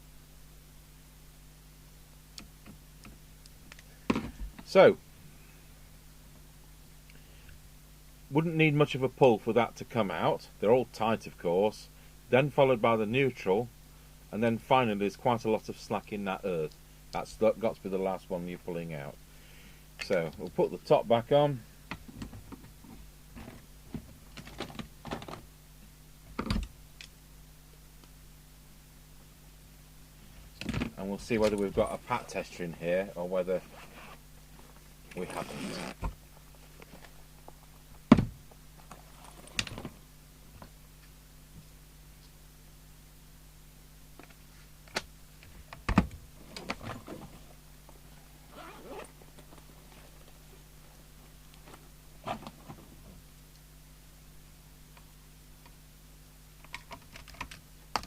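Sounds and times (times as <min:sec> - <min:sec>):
low mains hum: 0:00.0 - 0:58.0
thump: 0:38.1 - 0:38.4.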